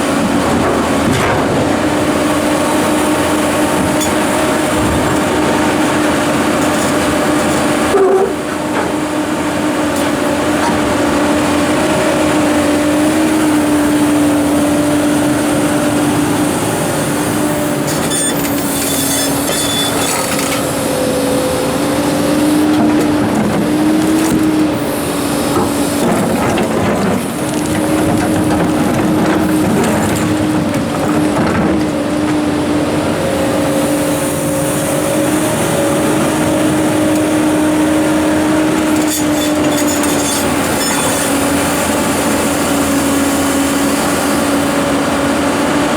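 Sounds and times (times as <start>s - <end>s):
excavator engine with hydraulic whine: 0.0s - 45.9s
harsh grinding of rocks: 22.4s - 32.5s.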